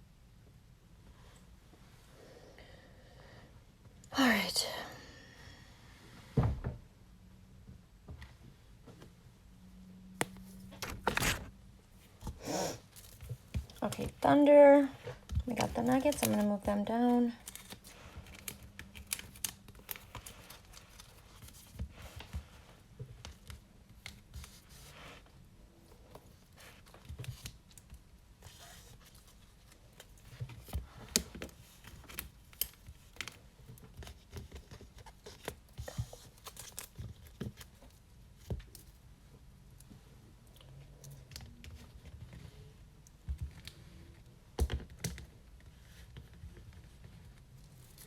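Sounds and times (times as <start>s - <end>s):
soft rustling of cards: 10.2s - 48.0s.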